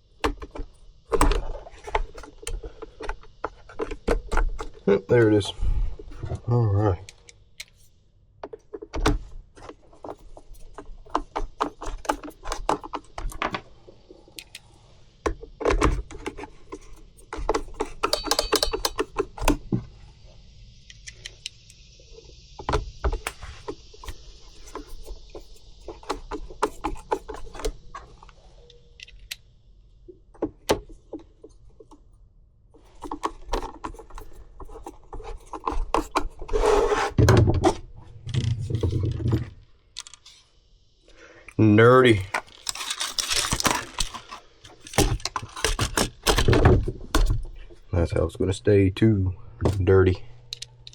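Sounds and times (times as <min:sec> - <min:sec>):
plastic parts clicking and knocking: 0:00.2 - 0:04.9, 0:07.0 - 0:19.9, 0:32.8 - 0:36.6, 0:37.2 - 0:40.4, 0:42.0 - 0:47.9.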